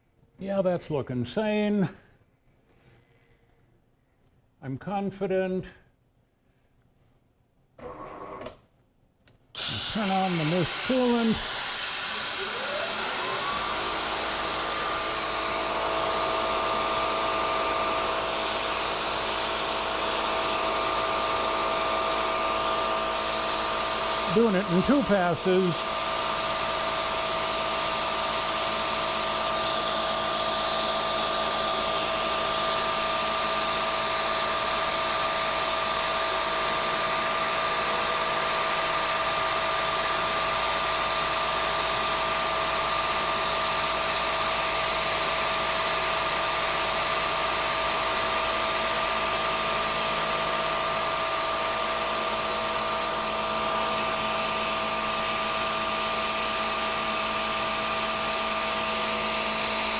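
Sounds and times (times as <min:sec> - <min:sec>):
hiss of coolant spray: 0:09.6 - 0:15.8
milling machine cutting steel: 0:09.6 - 0:59.9.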